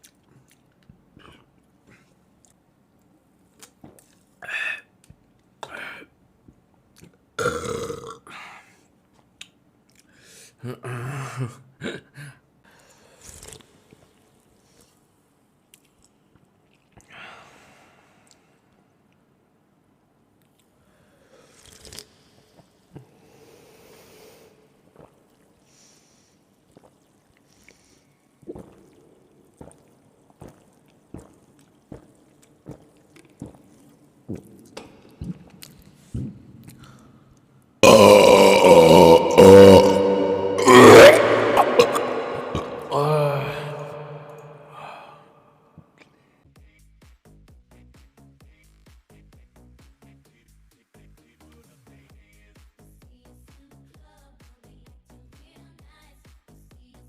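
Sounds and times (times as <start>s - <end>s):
wet mouth sounds of eating: 0.0s - 2.6s, 3.5s - 4.4s, 9.4s - 10.2s, 13.2s - 15.0s, 15.7s - 17.1s, 21.4s - 23.0s, 24.8s - 25.6s, 26.4s - 44.8s
man burping: 7.4s - 8.4s, 10.6s - 12.4s, 37.8s - 45.4s.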